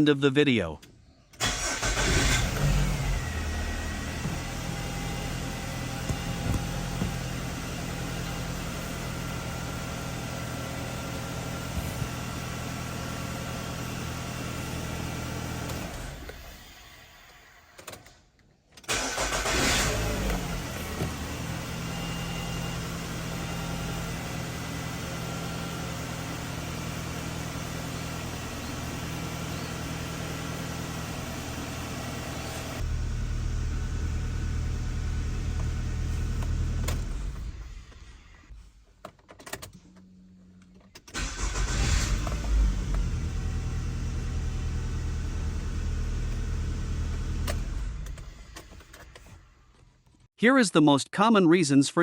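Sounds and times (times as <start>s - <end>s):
engine starting and revving: 1.4s - 9.1s, 11.0s - 17.8s, 18.9s - 23.6s, 41.0s - 49.2s
car engine running: 1.4s - 17.1s, 18.9s - 38.5s, 40.4s - 49.8s.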